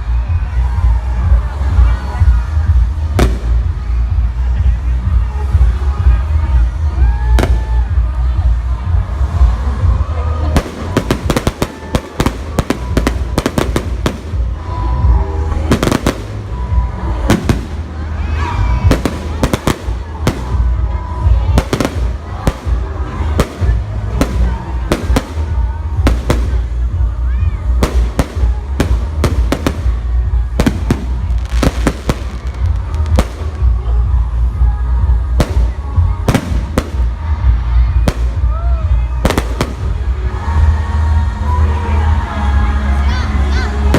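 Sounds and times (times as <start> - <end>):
continuous low rumble: 0.0 - 43.9
fireworks bangs: 10.6 - 17.9, 18.7 - 27.1, 27.7 - 34.2, 35.4 - 38.5, 39.2 - 40.2.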